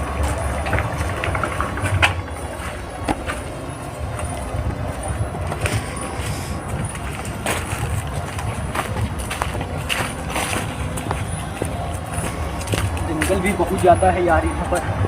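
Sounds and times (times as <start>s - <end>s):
footsteps through rubble: 0.0s - 15.0s
steady low rumble: 0.0s - 15.0s.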